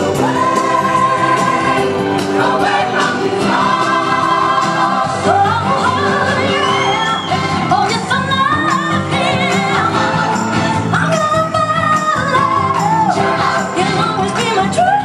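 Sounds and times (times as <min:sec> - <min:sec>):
choir singing gospel music: 0:00.0 - 0:15.0.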